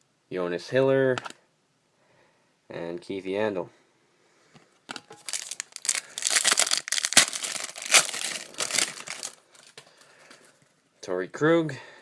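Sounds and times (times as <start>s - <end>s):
foil wrapper tearing and crinkling: 5.2s - 9.8s.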